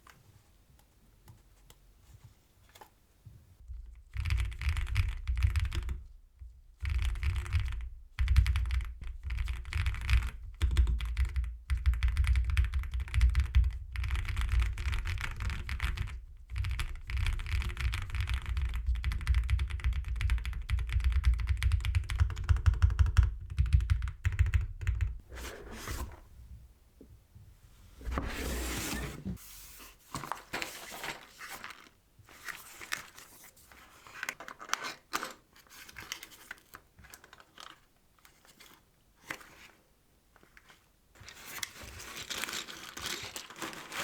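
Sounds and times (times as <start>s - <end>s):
mechanical keyboard typing: 4.1s - 6.0s, 6.8s - 25.2s.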